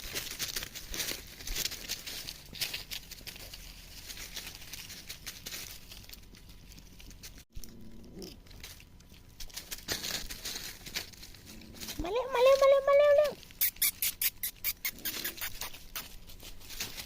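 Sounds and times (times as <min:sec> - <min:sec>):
rustling through dry leaves: 0:00.0 - 0:07.5, 0:08.2 - 0:17.0
puppy whimpering: 0:13.2 - 0:16.2.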